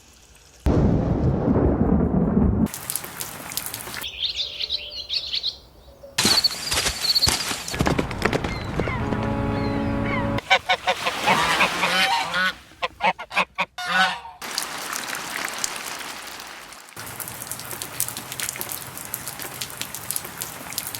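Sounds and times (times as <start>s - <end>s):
rain pattering: 0.7s - 4.1s, 7.5s - 10.4s, 14.4s - 20.9s
steady pitched drone: 7.8s - 10.4s
geese honking: 7.8s - 14.4s.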